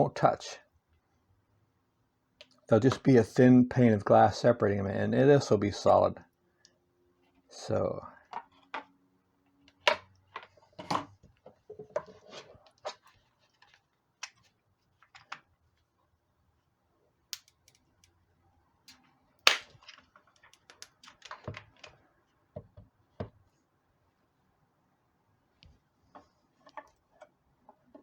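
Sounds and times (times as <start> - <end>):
magnet crack: 17.3 - 18.2, 18.9 - 21.3
clicks and knocks of handling: 18.9 - 22.0.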